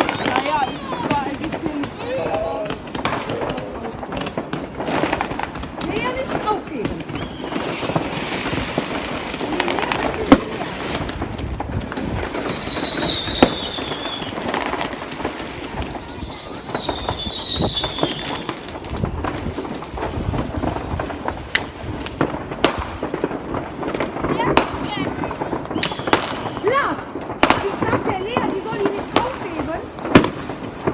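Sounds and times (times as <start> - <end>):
falling firework whistles: 0.0 - 1.4, 7.0 - 18.8, 25.4 - 26.9
fireworks crackling and banging: 0.0 - 30.9
loud firework bangs: 0.0 - 30.9.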